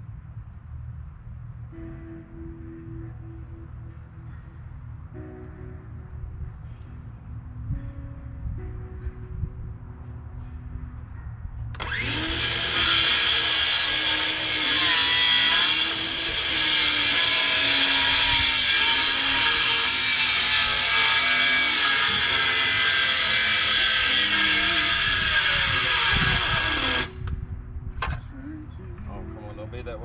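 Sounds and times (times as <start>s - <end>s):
power saw cutting wood: 11.8s - 27.2s.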